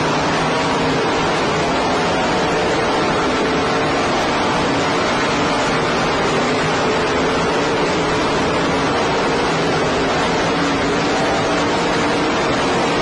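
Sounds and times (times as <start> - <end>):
race car engines roaring: 0.0 - 13.0.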